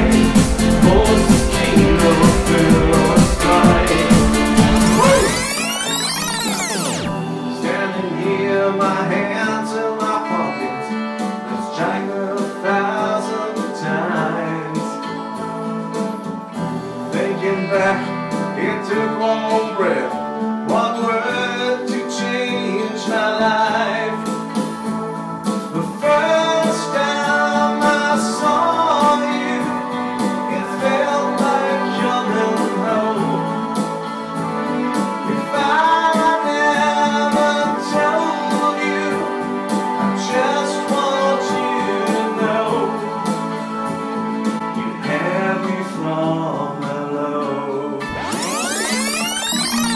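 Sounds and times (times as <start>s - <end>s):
pop dance-band music: 0.0s - 8.4s, 25.6s - 47.0s, 47.6s - 49.9s
person singing: 0.0s - 15.1s
guitar: 0.0s - 49.9s.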